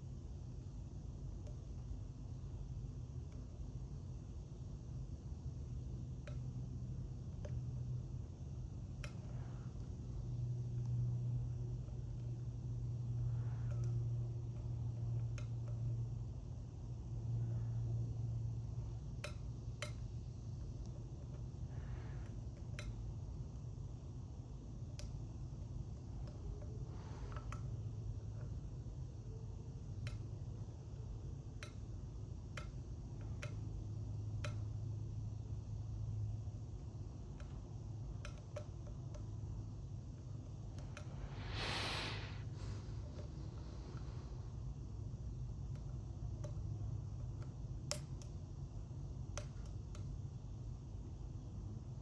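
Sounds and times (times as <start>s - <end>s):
steady low hum: 0.0s - 52.0s
low hum: 33.8s - 47.5s.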